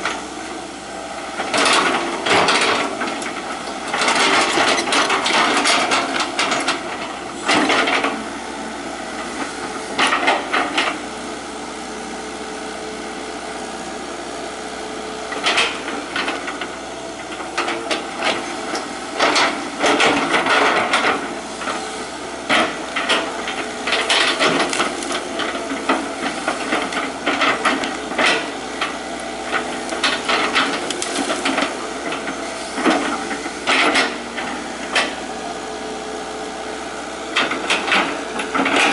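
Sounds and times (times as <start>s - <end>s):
excavator diesel engine: 0.0s - 38.9s
clattering and cracking digging: 1.4s - 8.2s, 9.3s - 11.0s, 15.3s - 35.4s, 37.3s - 38.9s.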